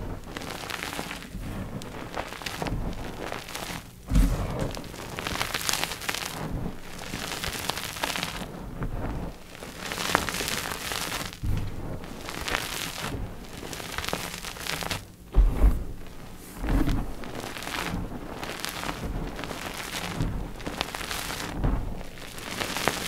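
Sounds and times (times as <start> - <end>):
sharp thump: 4.1 - 4.9.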